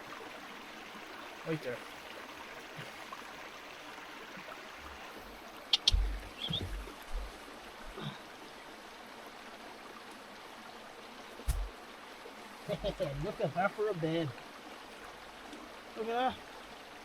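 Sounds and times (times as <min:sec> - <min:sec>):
river water rushing: 0:00.0 - 0:17.0
dull thumps and knock: 0:05.9 - 0:07.3, 0:11.5 - 0:11.7
sharp snap: 0:11.4 - 0:11.7.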